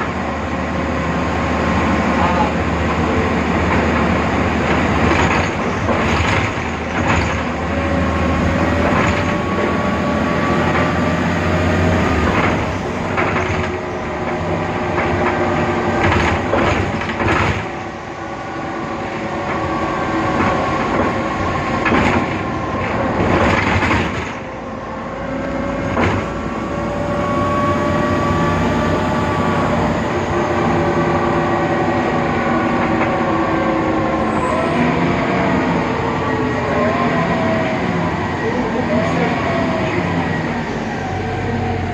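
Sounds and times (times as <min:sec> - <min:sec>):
bus drivetrain whine: 0:00.0 - 0:41.9
knocks and rattles: 0:04.6 - 0:07.6, 0:08.8 - 0:09.8, 0:12.2 - 0:17.8, 0:20.3 - 0:24.5, 0:25.9 - 0:26.4.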